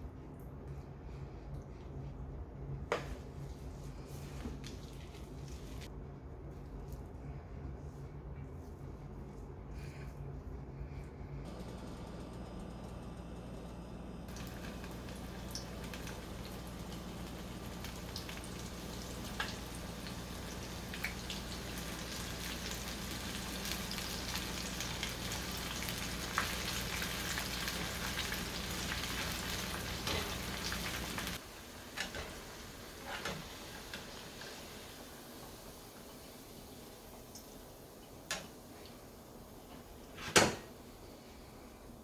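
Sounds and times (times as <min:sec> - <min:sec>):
oil sizzling with crackles: 0:11.5 - 0:40.2.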